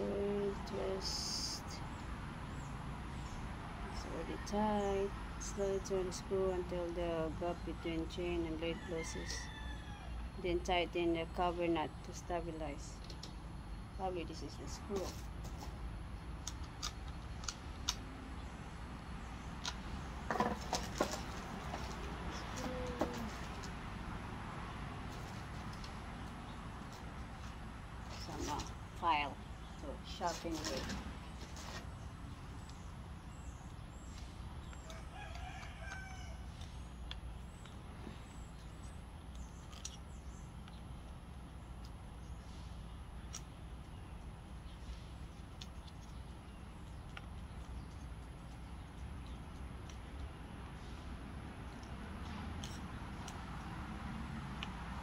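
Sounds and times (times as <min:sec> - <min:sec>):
rooster crowing: 0:08.8 - 0:10.3, 0:34.8 - 0:36.6.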